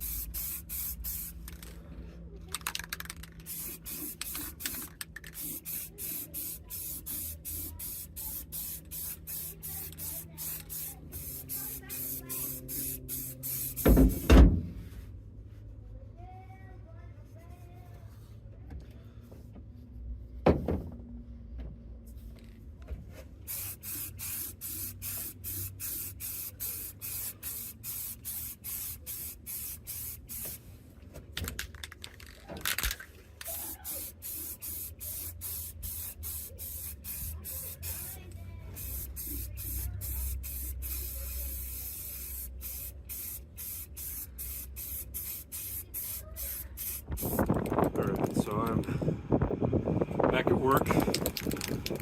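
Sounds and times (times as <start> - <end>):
aerosol spray can spraying: 0.0 - 1.8, 2.7 - 14.3, 23.5 - 30.6, 32.7 - 47.8.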